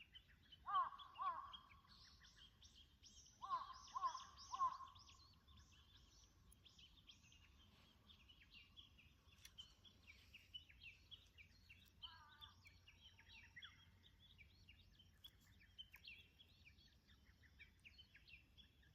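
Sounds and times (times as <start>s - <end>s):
low bird call: 0.0s - 14.3s
songbirds chirping: 0.0s - 18.9s.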